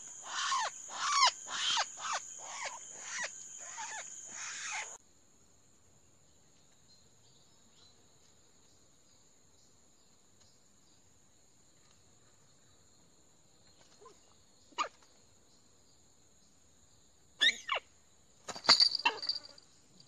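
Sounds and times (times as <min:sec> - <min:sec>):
crake calling: 0:00.0 - 0:05.0
faint insect buzz: 0:00.0 - 0:18.2, 0:18.8 - 0:20.0.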